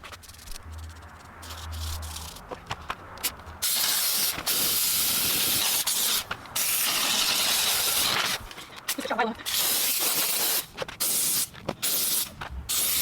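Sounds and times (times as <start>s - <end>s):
pressurised spray hissing: 3.6s - 8.4s, 9.4s - 13.0s.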